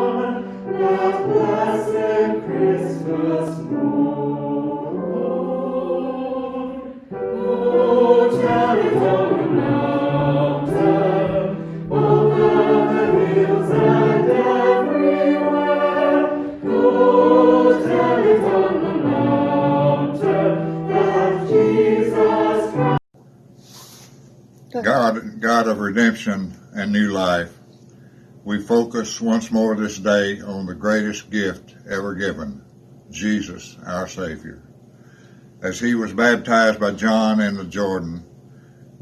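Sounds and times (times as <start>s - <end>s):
choir singing: 0.0s - 23.0s.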